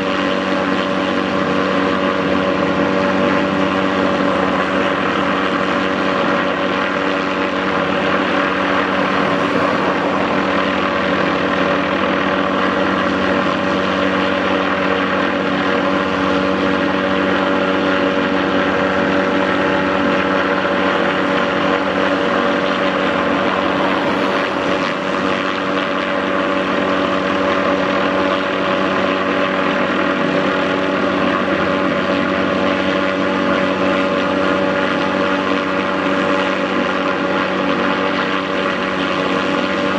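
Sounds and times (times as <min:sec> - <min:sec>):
helicopter whirring: 0:00.0 - 0:39.9.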